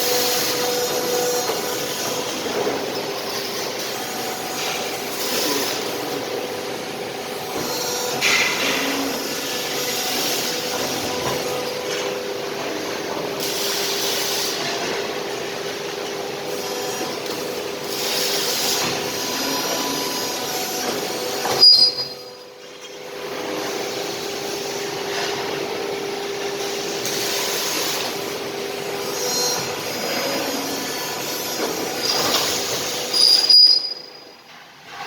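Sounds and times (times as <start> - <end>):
machine mechanical hum: 0.0 - 35.0
metallic stroke with squeal: 21.5 - 22.4, 33.1 - 34.4.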